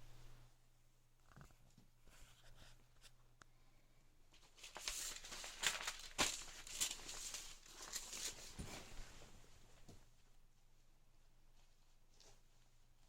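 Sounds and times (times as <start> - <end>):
fabric rustling and crinkling: 4.3 - 10.3.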